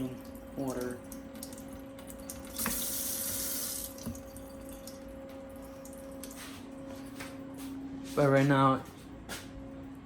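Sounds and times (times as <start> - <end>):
tap water running: 0.0 - 6.6
steady low hum: 0.0 - 10.0.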